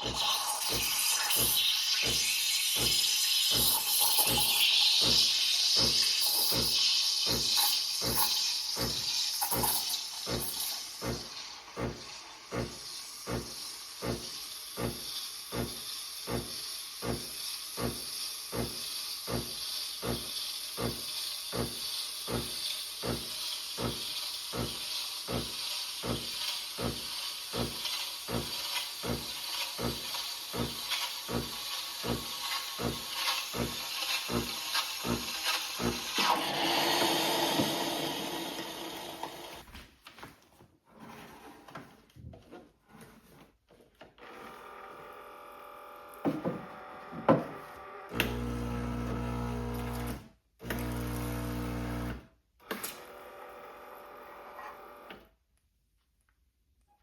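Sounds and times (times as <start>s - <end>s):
espresso machine steam hissing: 0.0s - 39.6s, 48.1s - 50.1s, 50.7s - 52.2s.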